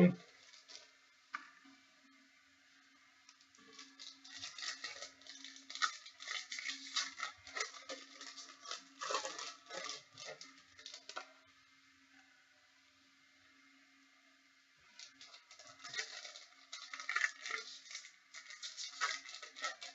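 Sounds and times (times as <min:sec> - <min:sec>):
foil wrappers crinkling and tearing: 0:00.2 - 0:00.9, 0:03.3 - 0:11.3, 0:15.0 - 0:19.9.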